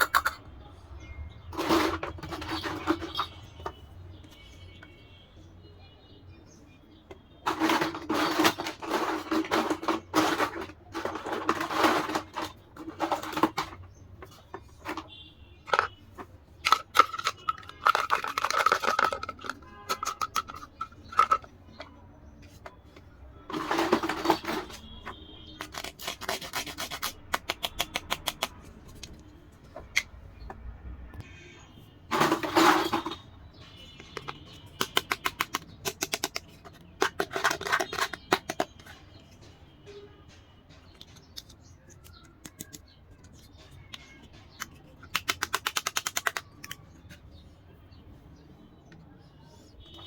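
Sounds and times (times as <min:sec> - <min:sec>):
small plastic pieces clicking: 0:16.6 - 0:21.9, 0:25.6 - 0:29.2, 0:34.2 - 0:39.0, 0:40.8 - 0:47.2.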